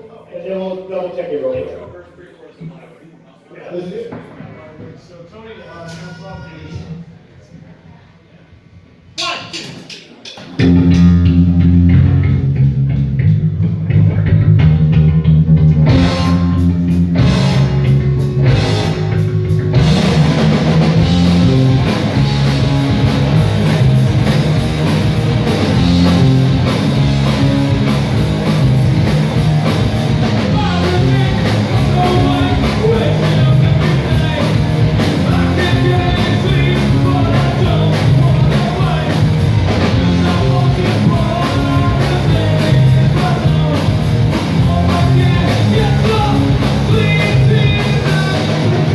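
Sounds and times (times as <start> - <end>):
bass guitar: 10.6 - 48.9
electric guitar: 10.6 - 48.9
drum kit with cymbals: 15.8 - 48.9.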